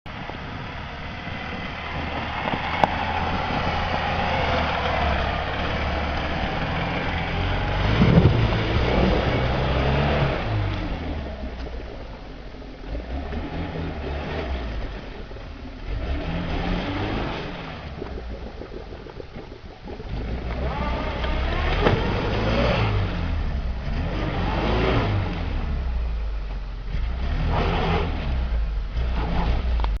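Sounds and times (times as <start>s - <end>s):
car engine revving: 0.1s - 30.0s.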